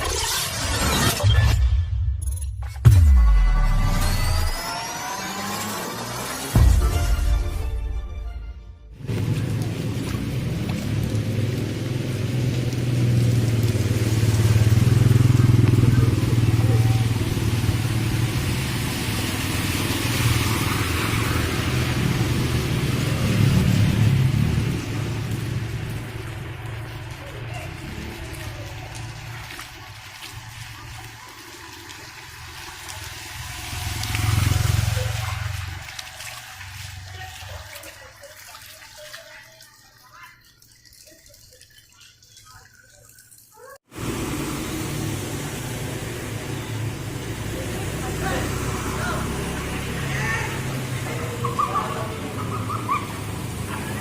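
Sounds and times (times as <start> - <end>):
vehicle engine running: 9.0 - 29.8, 43.9 - 54.0.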